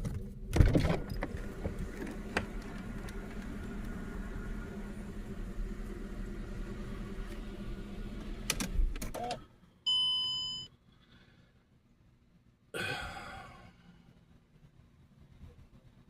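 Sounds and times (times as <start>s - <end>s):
car engine running: 1.0s - 9.0s
electronic warning chime: 9.9s - 10.7s.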